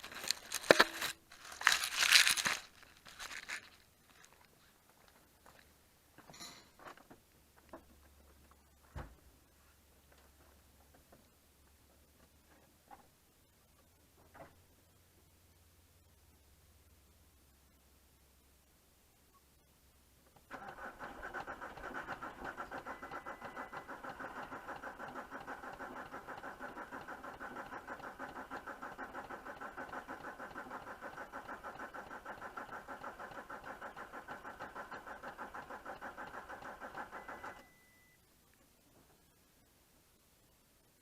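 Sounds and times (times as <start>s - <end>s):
diesel engine clattering: 20.5s - 37.6s.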